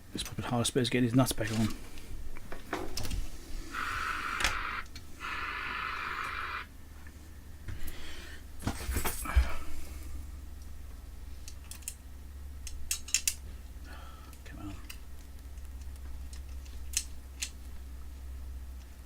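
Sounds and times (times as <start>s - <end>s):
whirring noise: 1.5s - 10.4s
metal parts clicking: 11.5s - 12.0s, 12.6s - 13.4s.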